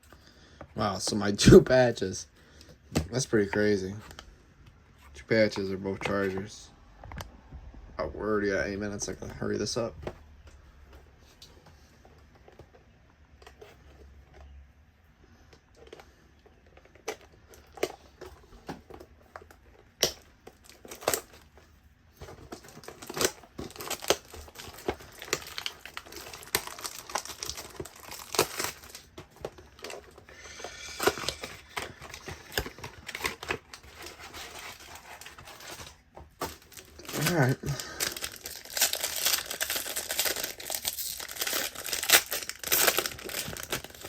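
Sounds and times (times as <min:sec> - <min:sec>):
foil wrappers crinkling and tearing: 0:19.0 - 0:21.6, 0:22.2 - 0:44.0.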